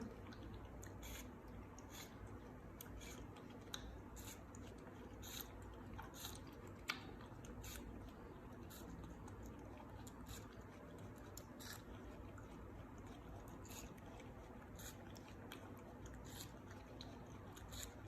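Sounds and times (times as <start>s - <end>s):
monkey chewing clicks and smacks: 0.0s - 18.0s.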